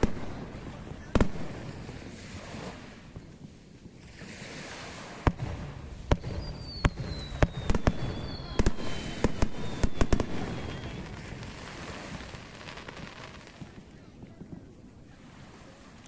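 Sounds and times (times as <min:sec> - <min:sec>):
fireworks bangs: 0:00.0 - 0:16.0
thin high falling whistle: 0:06.2 - 0:11.0.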